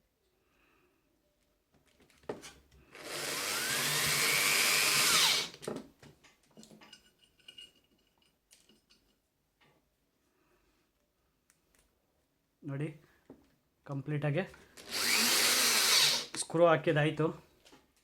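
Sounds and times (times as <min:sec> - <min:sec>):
power screwdriver driving screw: 0:03.0 - 0:05.6, 0:14.8 - 0:16.3.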